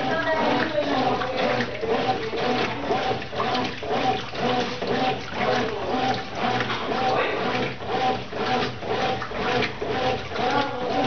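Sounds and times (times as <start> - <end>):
washing machine motor humming: 0.0 - 11.0
water sloshing: 0.0 - 11.0.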